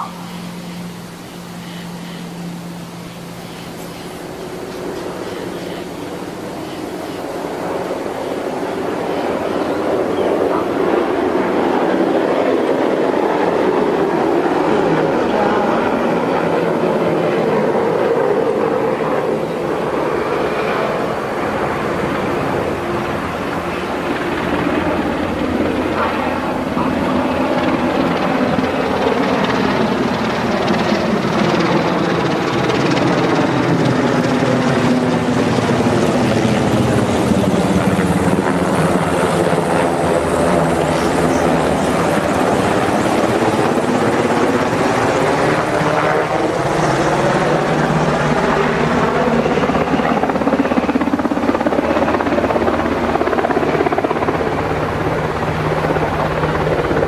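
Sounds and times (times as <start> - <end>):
helicopter rotor and engine: 0.0 - 57.0.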